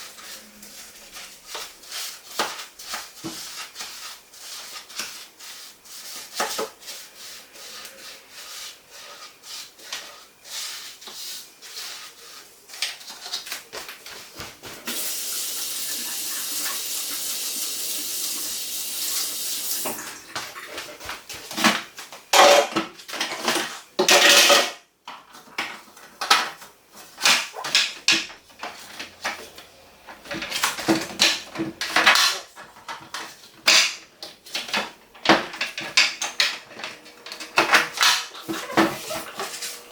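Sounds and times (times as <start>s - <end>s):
steady hiss: 0.0s - 21.6s
dishes clattering: 19.8s - 24.8s.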